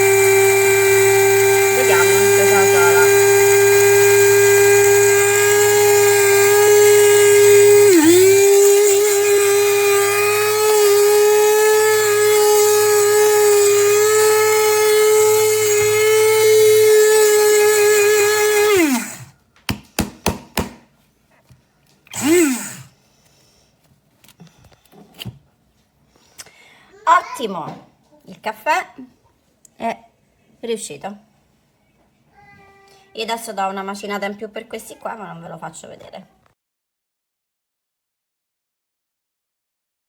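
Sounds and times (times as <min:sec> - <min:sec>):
coffee grinder whining: 0:00.0 - 0:19.4, 0:22.1 - 0:22.9.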